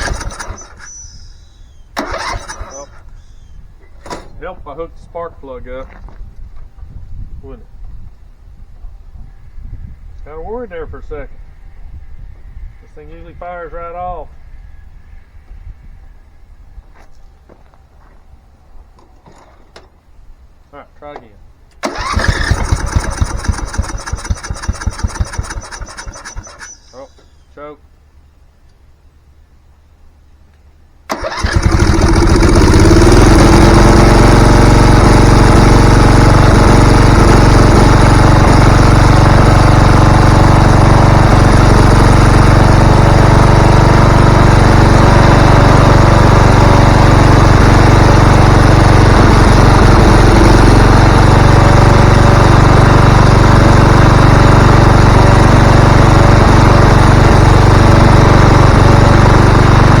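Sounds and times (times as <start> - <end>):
mower engine running: 0.0 - 3.4, 21.8 - 27.4, 31.1 - 60.0.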